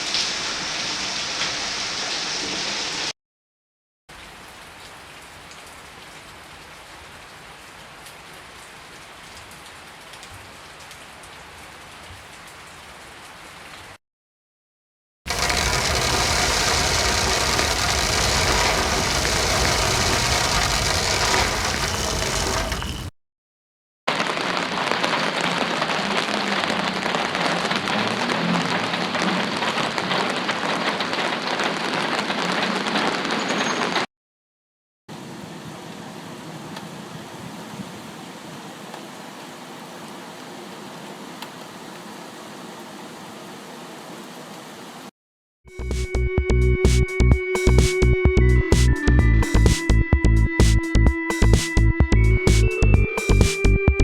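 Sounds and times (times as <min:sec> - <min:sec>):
heavy rain: 0:00.0 - 0:03.1, 0:04.1 - 0:14.0, 0:15.3 - 0:23.1, 0:24.1 - 0:34.1, 0:35.1 - 0:45.1
deep rumble: 0:15.3 - 0:23.1.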